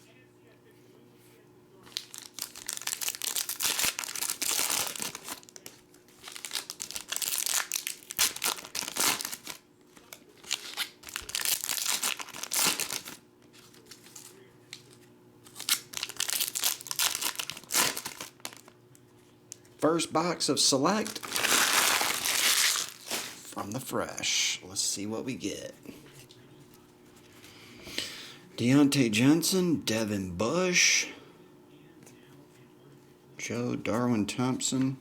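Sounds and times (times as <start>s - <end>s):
plastic wrapping crinkling and tearing: 1.8s - 18.8s, 20.9s - 23.5s.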